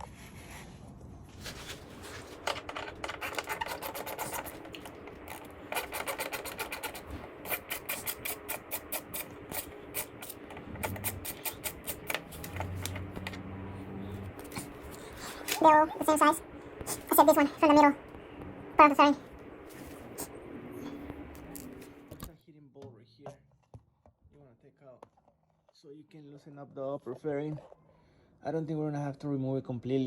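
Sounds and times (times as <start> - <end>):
hand ratchet clicking: 3.1 - 12.2.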